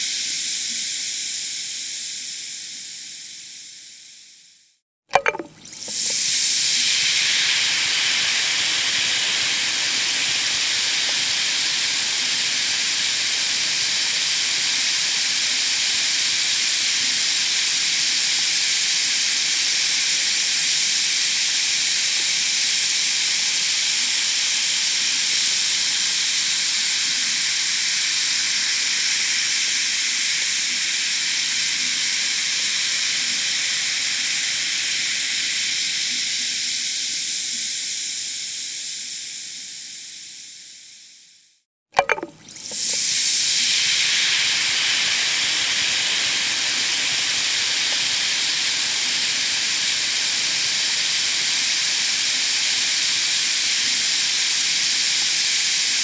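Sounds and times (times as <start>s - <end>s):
tablet fizzing in water: 5.1s - 16.9s, 42.0s - 51.8s.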